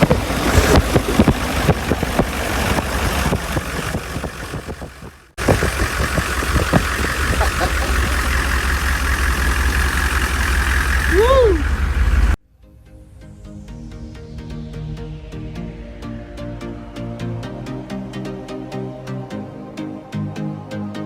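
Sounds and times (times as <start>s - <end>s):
knocks and rattles: 0.0s - 11.1s
diesel engine rumbling: 0.0s - 12.4s.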